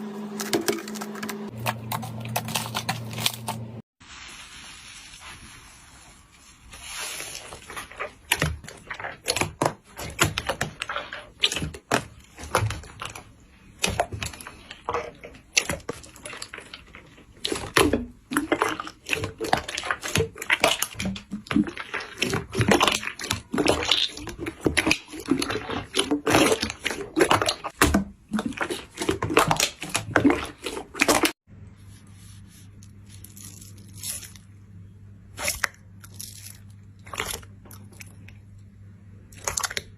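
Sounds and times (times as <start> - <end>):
slime squelching and popping: 6.9 - 31.4, 32.9 - 39.9.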